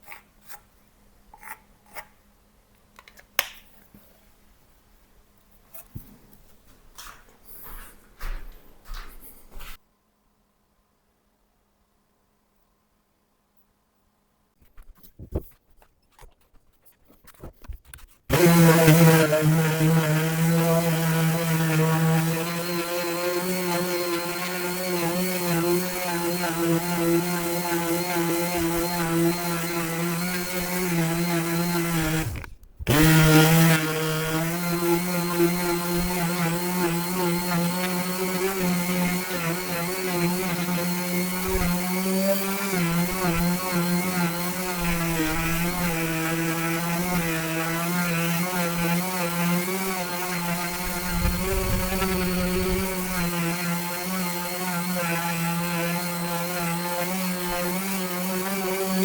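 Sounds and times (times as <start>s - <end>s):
electric power tool running: 18.3s - 59.0s.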